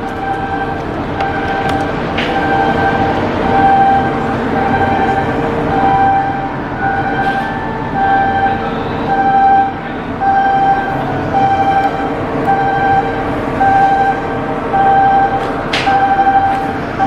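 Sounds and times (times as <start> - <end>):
electronic warning beeps: 0.0 - 17.0
machinery din: 0.0 - 17.0.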